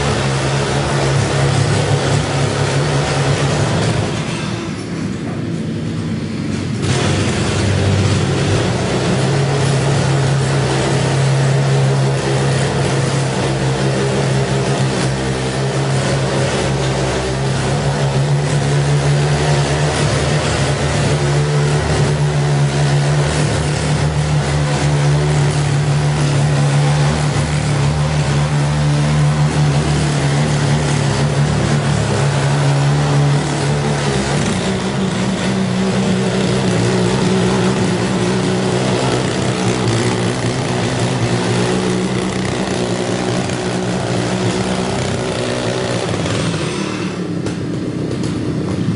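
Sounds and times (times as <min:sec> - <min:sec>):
small cultivator engine running: 0:00.0 - 0:48.9.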